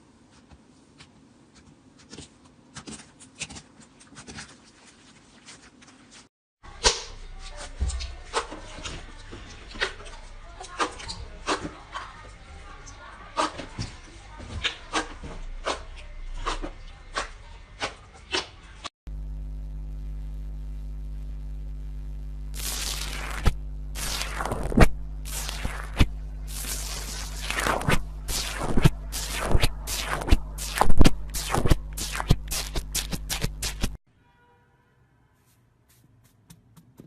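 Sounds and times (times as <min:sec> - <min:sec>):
low electrical hum: 0:19.1 - 0:34.0
slime squishing and crackling: 0:22.6 - 0:34.0.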